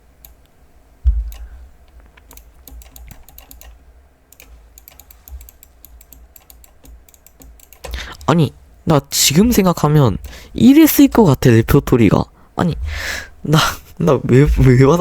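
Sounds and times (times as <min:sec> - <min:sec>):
keyboard typing clicks: 0:01.1 - 0:08.3.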